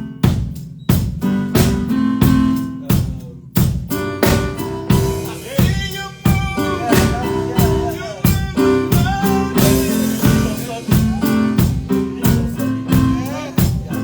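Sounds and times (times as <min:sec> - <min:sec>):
bass notes: 0:00.0 - 0:14.0
drum kit beat: 0:00.0 - 0:14.0
keyboard chords: 0:00.0 - 0:14.0
wavering melody line: 0:04.0 - 0:14.0.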